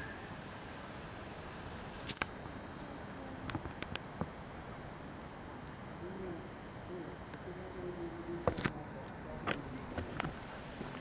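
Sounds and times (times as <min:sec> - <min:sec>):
crickets chirring: 0:00.0 - 0:11.0
faint sharp clicks: 0:03.4 - 0:04.3.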